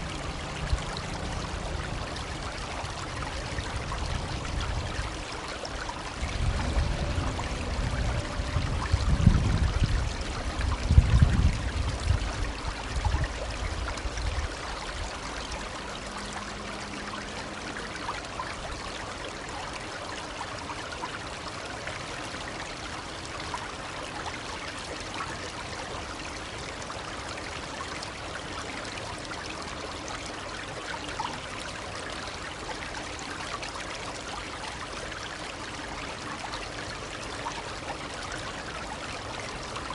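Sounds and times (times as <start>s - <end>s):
shallow stream babbling: 0.0s - 39.9s
low rumble: 6.2s - 12.6s.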